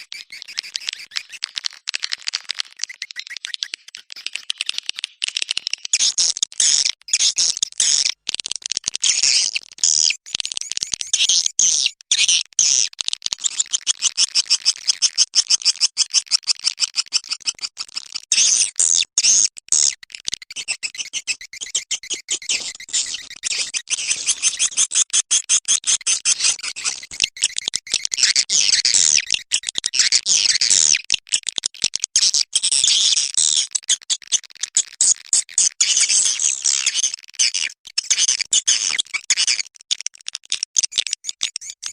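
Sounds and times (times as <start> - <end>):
swiftlets twittering: 20.4 - 24.8.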